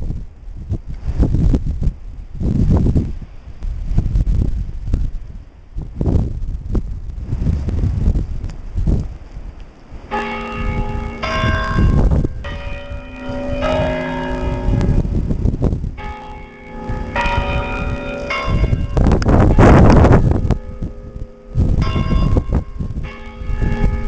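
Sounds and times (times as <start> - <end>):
wind buffeting microphone: 0.0 - 24.0
church bells ringing: 10.1 - 24.0.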